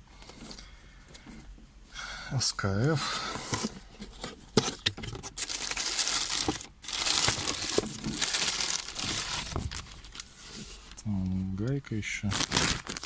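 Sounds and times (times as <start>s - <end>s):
packaging crinkling and rustling: 3.5s - 13.0s.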